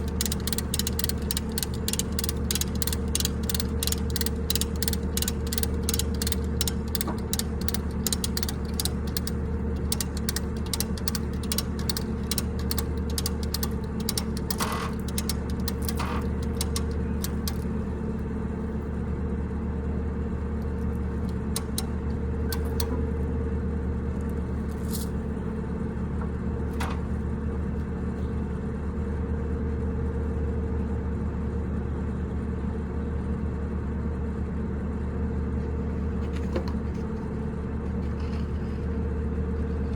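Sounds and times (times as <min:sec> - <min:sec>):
ratchet wrench clicking: 0:00.0 - 0:17.7, 0:21.2 - 0:22.9
engine idling: 0:00.0 - 0:19.1.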